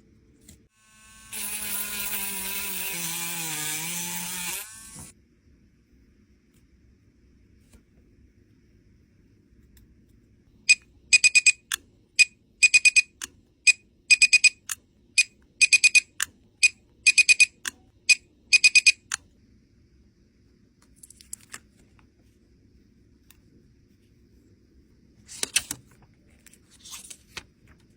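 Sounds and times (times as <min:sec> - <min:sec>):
electronic device beeping: 0:10.7 - 0:19.2.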